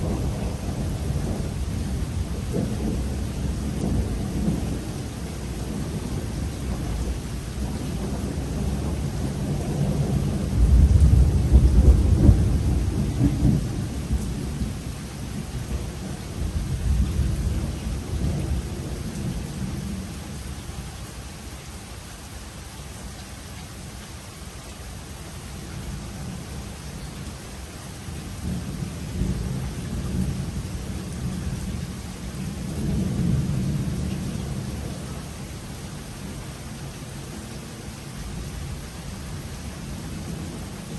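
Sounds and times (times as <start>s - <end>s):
thunder rumbling: 0.0s - 20.4s, 28.3s - 36.5s
steady rainfall: 0.0s - 40.9s.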